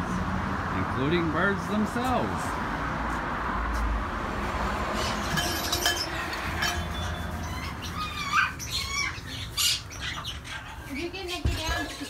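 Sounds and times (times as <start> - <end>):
birds chirping and squawking: 4.8 - 12.0.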